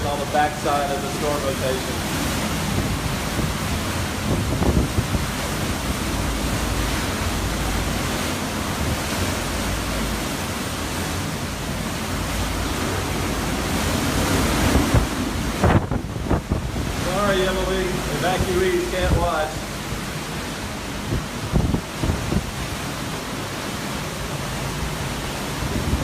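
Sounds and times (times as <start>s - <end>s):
strong wind rushing: 0.0s - 23.1s, 24.8s - 26.0s
wind buffeting microphone: 0.0s - 26.0s.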